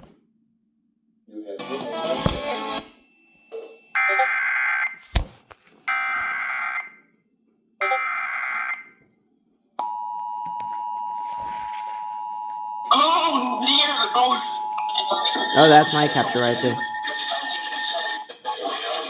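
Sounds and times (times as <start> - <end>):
steady two-tone attention signal: 13.6 - 18.3.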